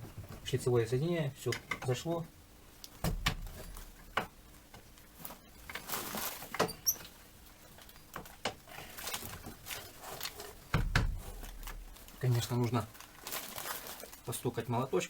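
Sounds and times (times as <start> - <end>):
heavy thud: 10.7 - 11.9.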